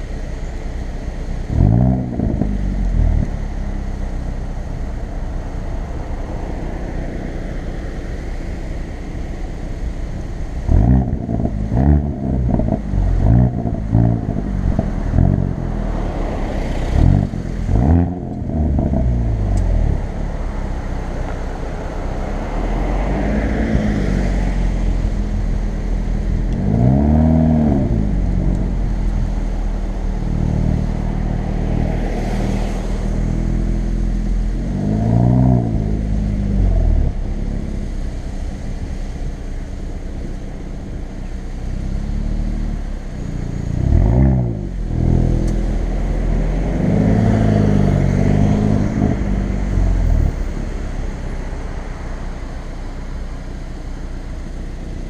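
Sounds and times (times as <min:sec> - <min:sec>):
car engine revving: 0:00.0 - 0:55.0
road noise rumble: 0:00.0 - 0:55.0.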